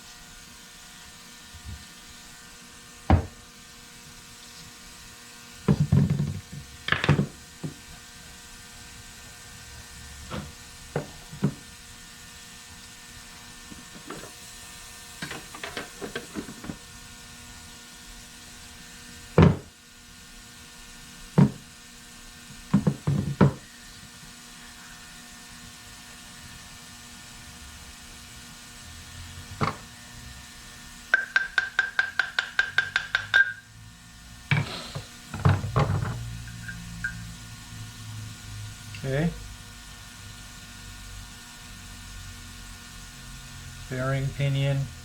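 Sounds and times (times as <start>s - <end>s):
hammer knocking on metal: 3.1s - 3.4s, 5.7s - 7.8s, 19.4s - 19.7s, 21.4s - 21.6s, 31.2s - 33.6s
metal parts clattering on workbench: 5.7s - 7.4s, 33.3s - 33.6s, 35.4s - 36.8s.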